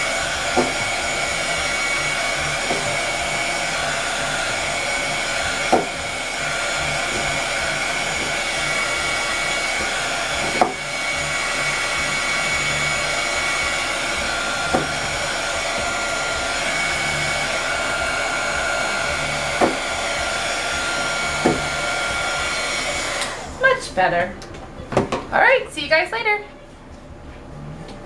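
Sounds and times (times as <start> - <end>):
heat gun blowing hot air: 0.0 - 23.8.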